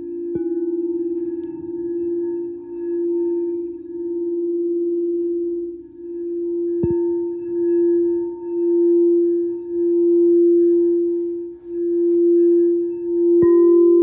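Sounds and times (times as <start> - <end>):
singing bowl ringing: 0.0 - 14.0.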